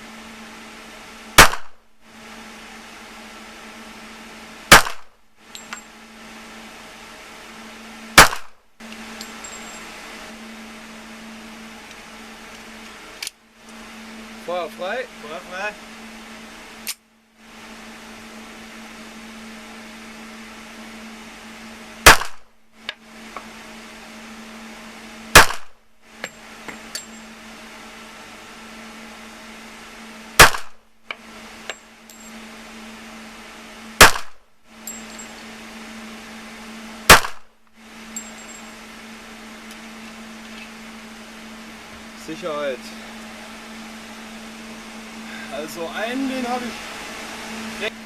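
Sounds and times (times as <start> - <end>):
handgun shots: 1.4 - 1.8, 4.7 - 5.1, 8.2 - 8.6, 22.1 - 22.4, 25.4 - 25.7, 30.4 - 30.8, 34.0 - 34.4, 37.1 - 37.5.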